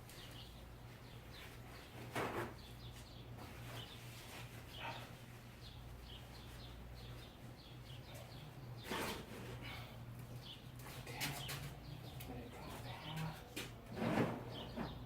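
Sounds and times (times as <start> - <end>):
faint birds chirping: 0.0 - 15.0.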